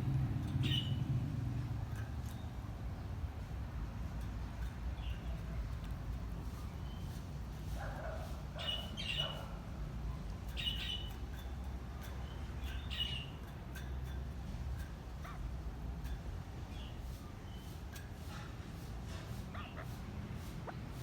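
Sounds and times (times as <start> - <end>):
partridge calling: 8.6 - 9.5, 19.5 - 21.0.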